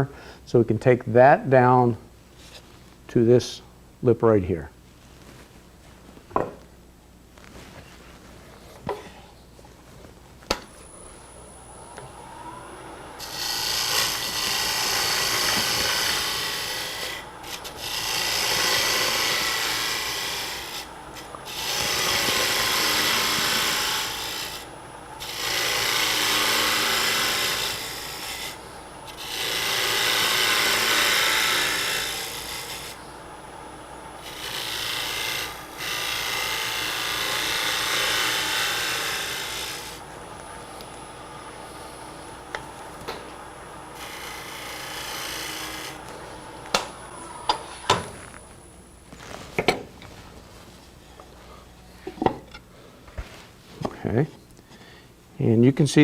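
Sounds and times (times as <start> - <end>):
lathe humming: 10.5 - 50.0
tool cutting wood on a lathe: 10.8 - 48.1.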